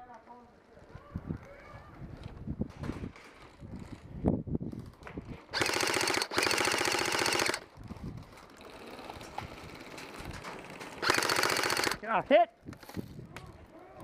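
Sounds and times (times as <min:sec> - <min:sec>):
airsoft rifle firing bursts: 0:05.5 - 0:07.7, 0:11.0 - 0:12.0.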